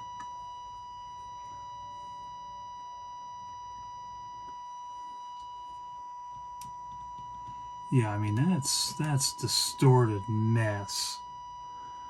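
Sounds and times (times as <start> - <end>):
buzzy steady test tone: 7.1 - 12.0.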